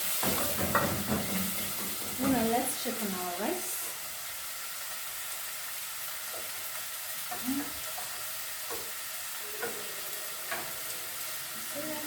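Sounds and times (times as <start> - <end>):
food sizzling in a pot: 0.0 - 12.0
utensil knocking on cookware: 0.2 - 2.6.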